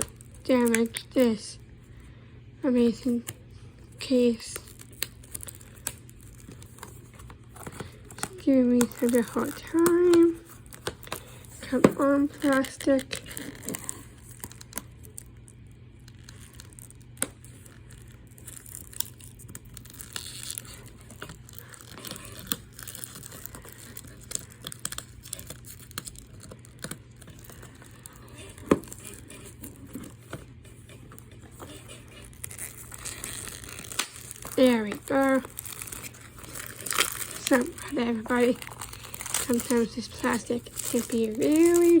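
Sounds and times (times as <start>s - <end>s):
shrink wrap crinkling and tearing: 0.0s - 1.6s, 2.7s - 42.0s.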